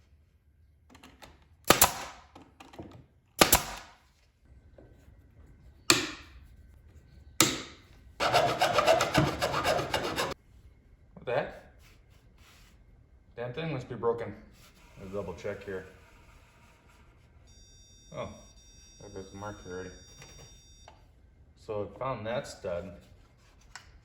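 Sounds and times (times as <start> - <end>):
loud steady rasping noise: 8.2 - 10.4.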